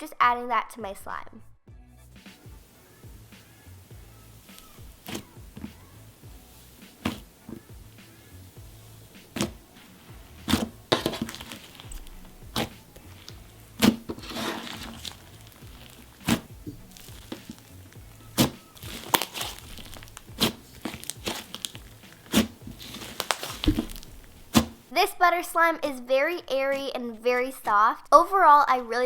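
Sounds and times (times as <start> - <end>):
faint background music: 0.0 - 29.0
slime popping and squishing: 4.4 - 5.8, 6.9 - 7.7, 9.2 - 9.6, 10.4 - 24.9.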